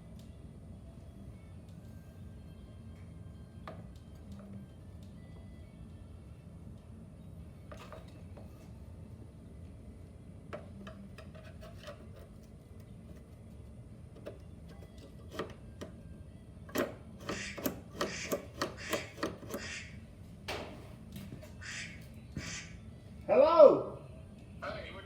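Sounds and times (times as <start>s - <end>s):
low steady hum: 0.0s - 17.2s.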